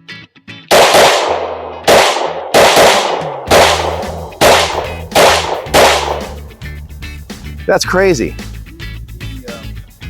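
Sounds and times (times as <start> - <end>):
pistol shots: 0.7 - 6.4.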